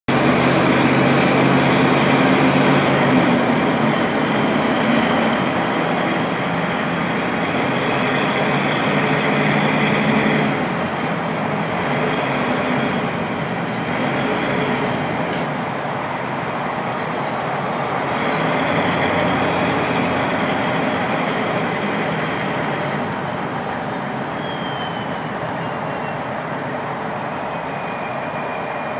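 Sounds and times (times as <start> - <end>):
diesel engine drone: 0.1 - 28.9
turbo whistle: 22.0 - 26.3.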